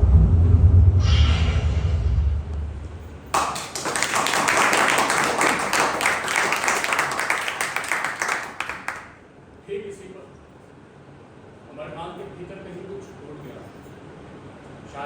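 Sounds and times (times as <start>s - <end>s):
audience applauding: 3.3s - 9.2s.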